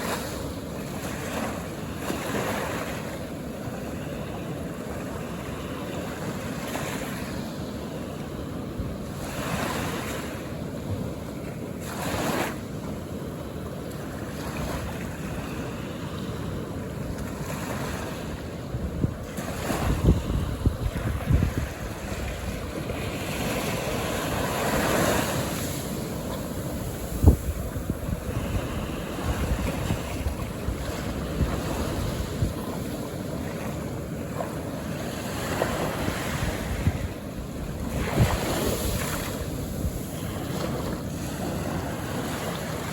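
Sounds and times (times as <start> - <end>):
ocean waves washing onto beach: 0.0 - 42.9
wind buffeting microphone: 14.6 - 42.9.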